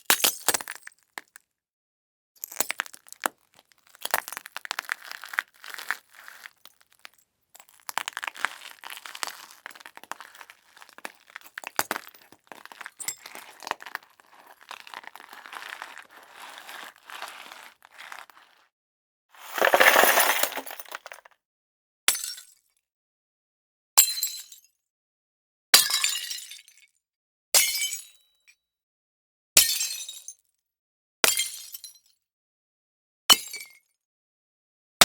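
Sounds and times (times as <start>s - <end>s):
glass cracking and crunching: 4.0s - 18.6s, 19.4s - 21.3s.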